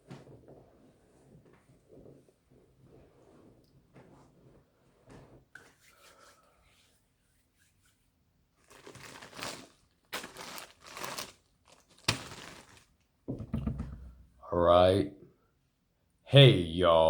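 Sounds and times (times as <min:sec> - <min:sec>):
packaging crinkling and rustling: 0:08.6 - 0:13.0.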